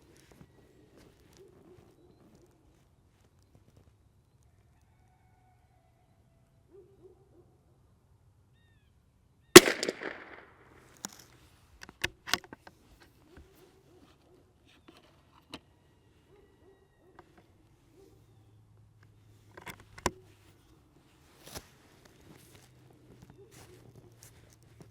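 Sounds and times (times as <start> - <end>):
metallic clicks of rifle bolt: 9.6 - 10.4
rifle shot with echo: 9.6 - 10.6.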